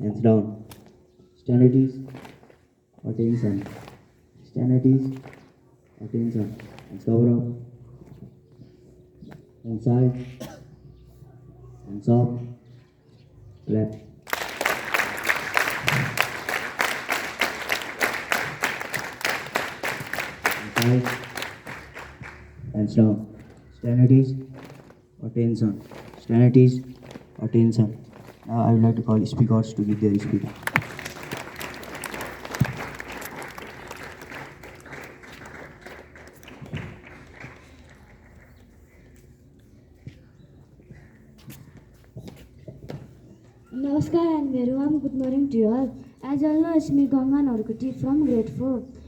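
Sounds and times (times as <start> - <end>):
group clapping in rhythm: 14.2 - 22.7, 29.8 - 38.8.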